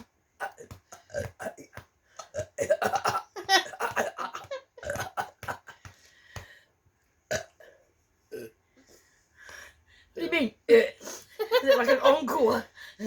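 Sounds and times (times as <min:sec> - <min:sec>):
person burping: 0:00.4 - 0:05.8, 0:07.3 - 0:08.6.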